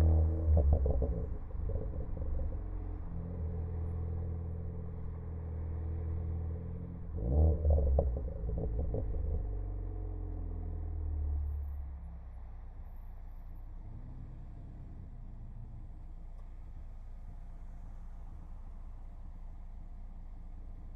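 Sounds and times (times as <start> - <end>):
exhaust crackles and pops: 0.0 - 3.0, 7.2 - 10.0, 14.4 - 20.9
car engine running: 0.0 - 20.9.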